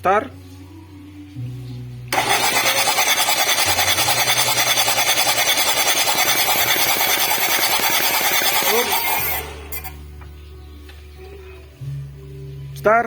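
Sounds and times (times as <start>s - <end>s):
diesel engine cranking on starter: 2.1s - 10.0s.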